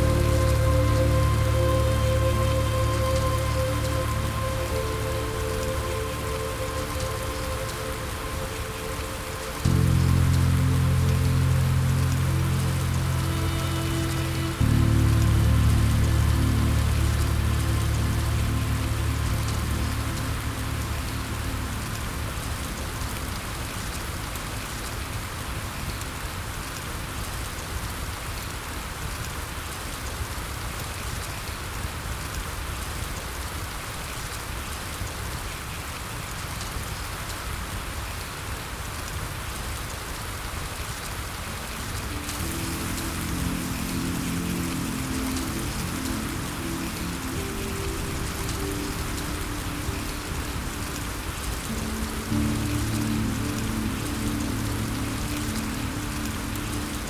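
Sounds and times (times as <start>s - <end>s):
soft low music notes: 0.0s - 26.9s, 41.4s - 57.0s
rain hiss with patter: 0.0s - 57.0s.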